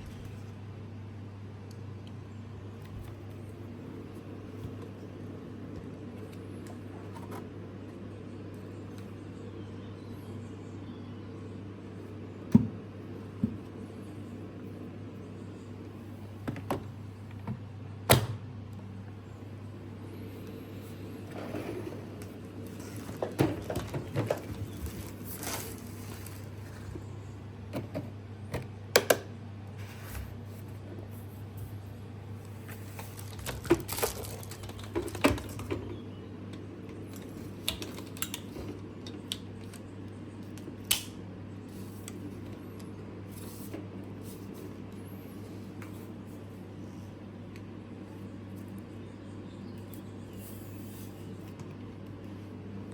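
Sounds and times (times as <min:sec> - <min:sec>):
steady low hum: 0:00.0 - 0:52.9
packaging rustling: 0:22.7 - 0:26.9, 0:32.7 - 0:35.7
clicks and knocks of handling: 0:32.7 - 0:41.2.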